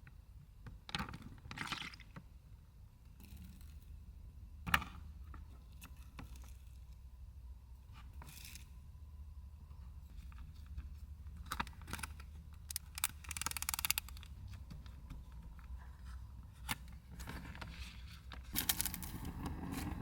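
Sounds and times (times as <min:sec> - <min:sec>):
rustling and scraping: 0:12.9 - 0:20.0.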